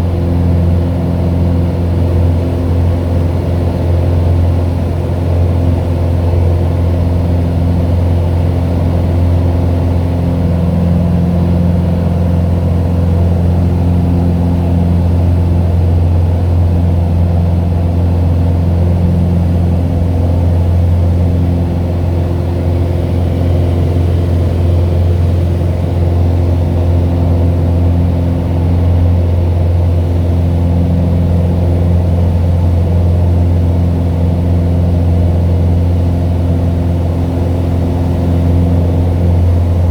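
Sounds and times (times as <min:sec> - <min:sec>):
airplane engine drone in cabin: 0:00.0 - 0:39.9.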